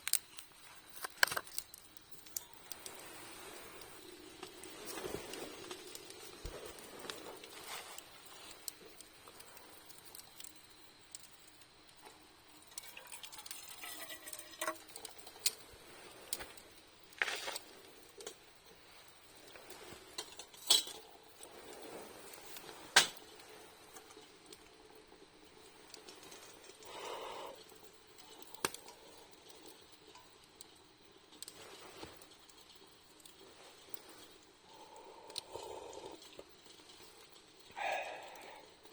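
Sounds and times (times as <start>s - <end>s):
cookware and utensils clinking: 12.8s - 14.9s.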